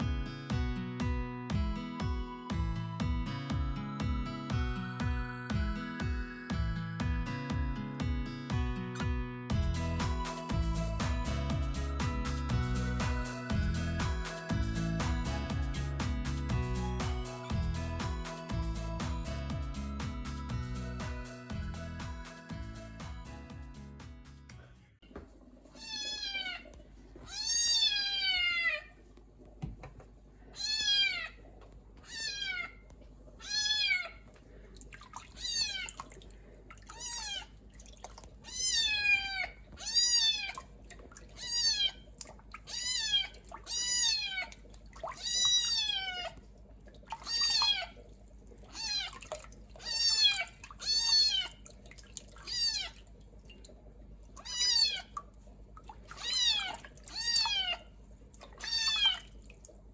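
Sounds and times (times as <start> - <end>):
kitten meowing: 54.4 - 55.1, 56.2 - 57.8.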